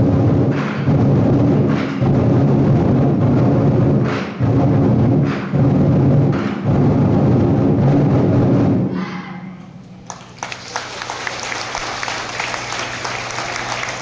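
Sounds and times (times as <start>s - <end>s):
loud music with heavy drumming: 0.0s - 8.9s
audience applauding: 10.0s - 14.0s.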